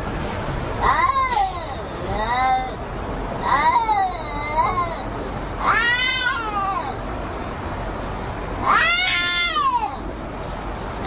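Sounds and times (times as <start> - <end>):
cats yowling: 0.8 - 2.8, 3.4 - 7.0, 8.6 - 10.1.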